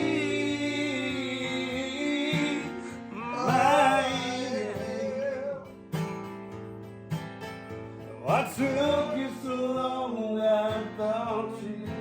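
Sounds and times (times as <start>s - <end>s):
song with singer and instruments: 0.0s - 6.3s.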